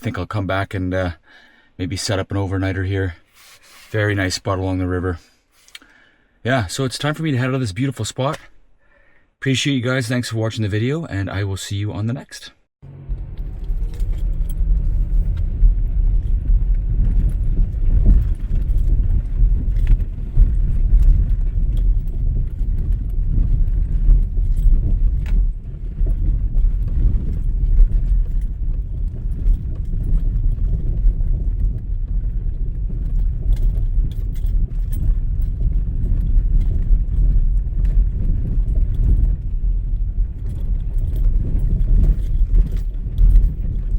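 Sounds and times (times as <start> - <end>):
vehicle rumbling on gravel road: 12.8 - 43.9
small rattles and clicks: 13.1 - 43.9.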